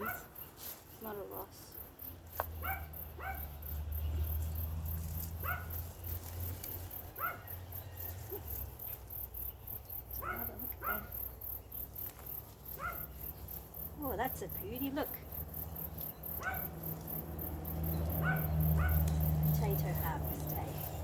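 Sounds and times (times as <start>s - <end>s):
dog barking: 0.0s - 0.3s, 2.6s - 3.5s, 5.4s - 5.8s, 7.2s - 7.6s, 10.2s - 11.2s, 12.7s - 13.2s, 16.4s - 16.9s, 18.2s - 19.1s.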